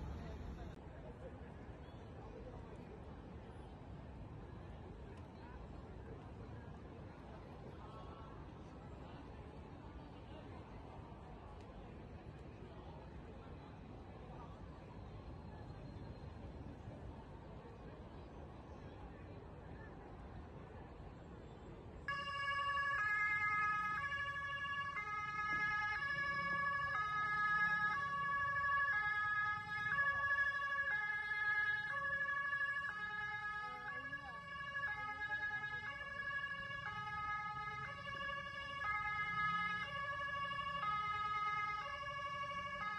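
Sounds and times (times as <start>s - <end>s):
two-tone emergency siren: 22.1s - 42.9s.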